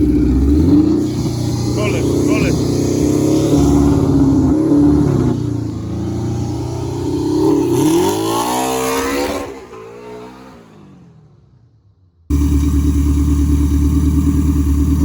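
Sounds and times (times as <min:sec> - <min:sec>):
car engines accelerating hard: 0:00.0 - 0:11.2.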